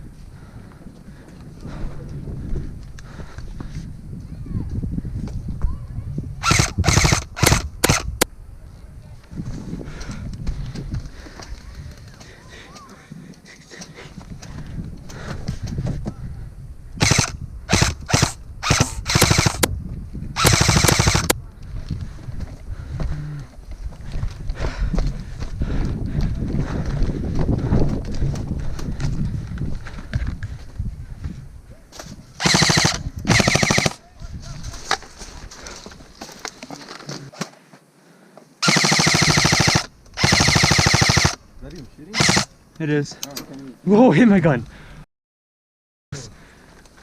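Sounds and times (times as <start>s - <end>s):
airsoft rifle full auto bursts: 6.4s - 8.2s, 17.0s - 19.7s, 20.4s - 21.3s, 32.4s - 34.0s, 38.6s - 41.4s, 42.2s - 42.5s.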